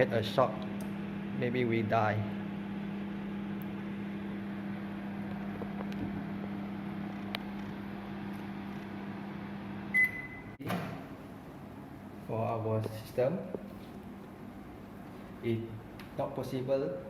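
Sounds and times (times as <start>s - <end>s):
electrical hum: 0.0s - 17.0s
short high beep: 10.0s - 10.5s.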